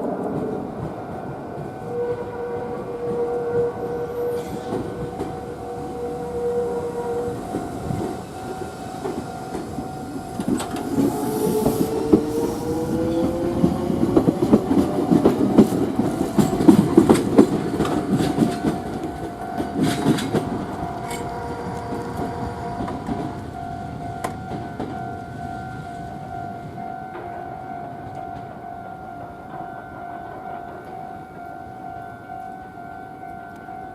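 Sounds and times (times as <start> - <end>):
electric train motor whine: 1.9 - 26.3
train wheels clicking over rail joints: 7.2 - 26.3.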